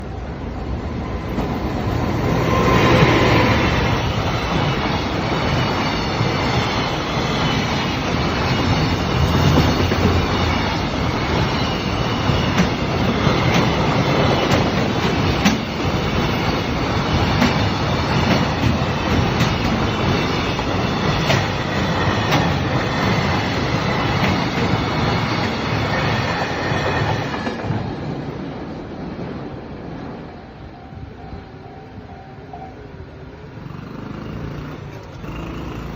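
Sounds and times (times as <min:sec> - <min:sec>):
freight train rumbling: 0:00.0 - 0:35.9
wheels clacking over rail joints: 0:08.4 - 0:27.8.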